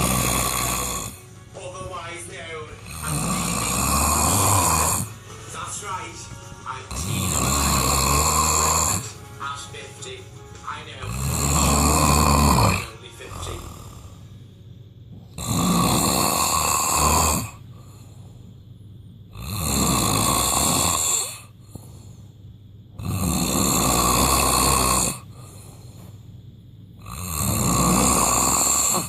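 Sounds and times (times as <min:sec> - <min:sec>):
person snoring loudly: 0:00.0 - 0:01.3, 0:02.8 - 0:05.3, 0:06.9 - 0:09.2, 0:11.0 - 0:14.3, 0:15.3 - 0:18.1, 0:19.3 - 0:22.0, 0:23.0 - 0:25.7, 0:27.0 - 0:29.0
quiet breathing: 0:17.4 - 0:19.6, 0:20.9 - 0:23.5, 0:24.3 - 0:29.0.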